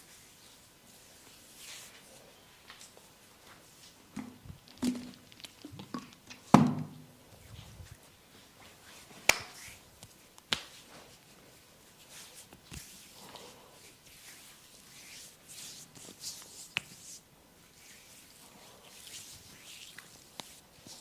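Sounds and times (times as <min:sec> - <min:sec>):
hands slapping and patting skin: 0:09.1 - 0:11.0, 0:12.1 - 0:13.2, 0:14.1 - 0:17.2, 0:17.8 - 0:21.0.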